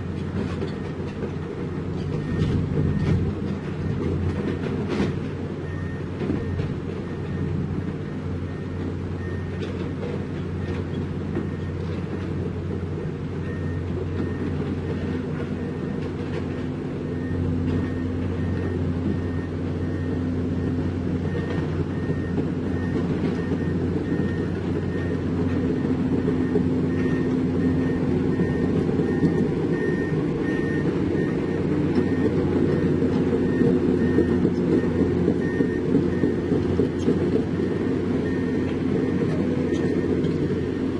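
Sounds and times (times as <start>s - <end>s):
heavy diesel engine running: 0.0s - 40.9s.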